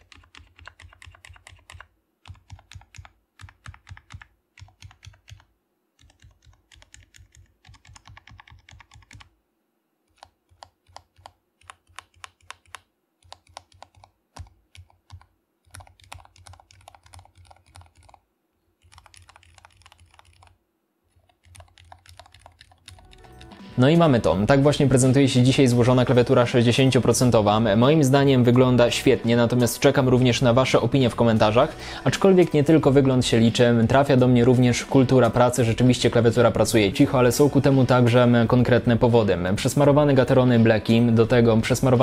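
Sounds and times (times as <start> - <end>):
typing on mechanical keyboard: 0.0 - 9.3, 10.1 - 18.2, 18.8 - 23.6.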